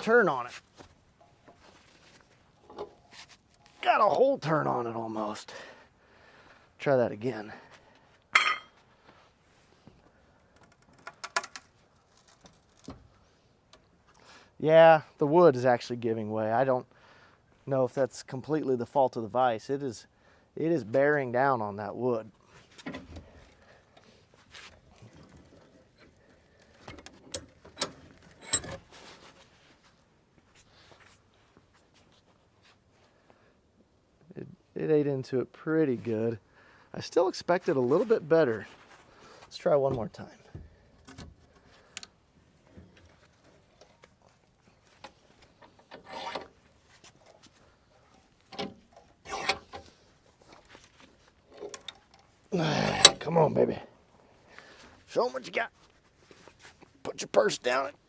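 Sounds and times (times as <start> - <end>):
wood creaking: 48.5 - 49.9.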